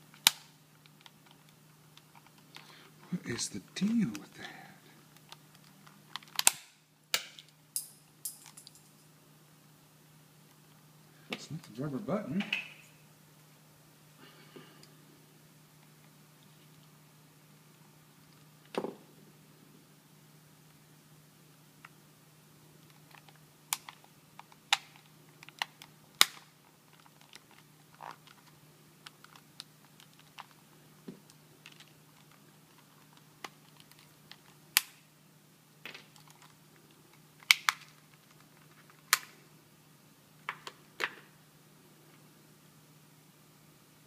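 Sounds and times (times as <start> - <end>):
faint low hum: 0.0 - 44.0
plastic clicks and snaps: 5.2 - 7.9, 22.9 - 35.0, 37.4 - 39.4.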